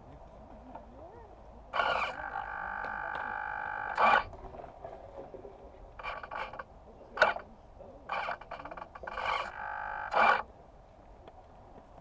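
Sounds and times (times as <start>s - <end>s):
small electric motor whining: 1.8s - 4.4s, 6.0s - 7.4s, 8.1s - 10.5s.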